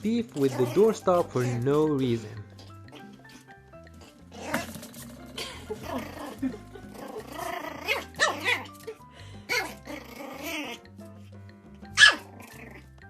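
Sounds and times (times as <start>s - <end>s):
background music: 0.0s - 13.0s
puppy yapping: 7.2s - 8.8s, 12.0s - 12.8s.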